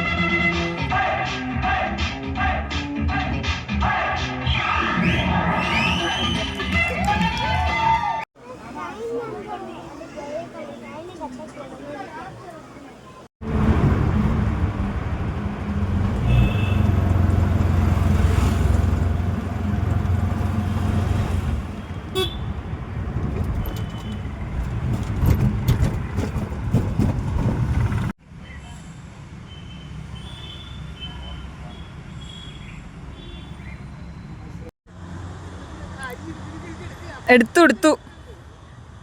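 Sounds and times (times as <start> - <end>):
traffic noise: 5.6 - 39.0
vehicle engine rumble: 13.4 - 28.2
short horn toots: 16.2 - 17.0, 21.8 - 22.6.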